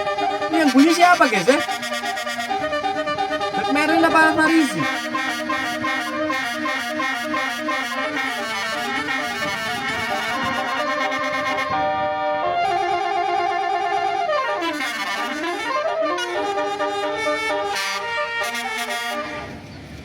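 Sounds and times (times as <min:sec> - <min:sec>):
bus horn playing a tune: 0:00.0 - 0:19.6.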